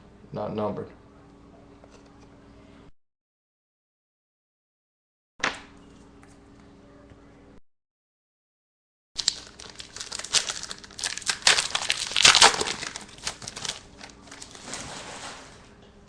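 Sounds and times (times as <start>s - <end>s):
card pack wrapper crinkling and tearing: 9.2s - 14.8s.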